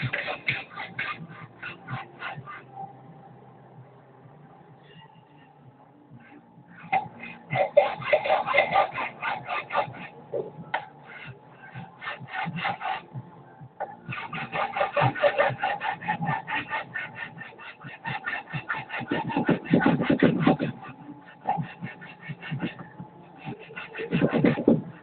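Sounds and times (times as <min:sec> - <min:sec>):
hand tool scraping hard surface: 0:00.0 - 0:02.6, 0:06.8 - 0:13.1, 0:13.8 - 0:22.8, 0:23.4 - 0:25.0.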